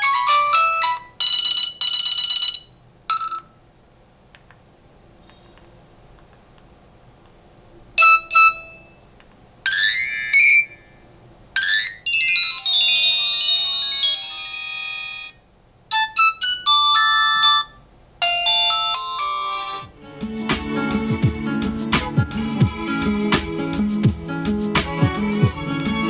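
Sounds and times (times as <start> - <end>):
electronic ringtone melody: 0.0 - 3.6, 8.0 - 8.9, 9.7 - 10.9, 11.6 - 20.4
short phone beeps: 8.0 - 9.0.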